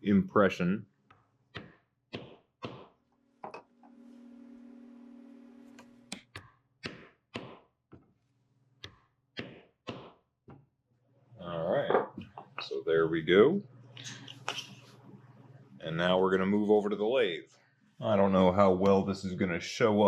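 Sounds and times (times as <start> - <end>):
sharp knocks on wood: 1.6 - 2.9
steady low hum: 11.4 - 17.4.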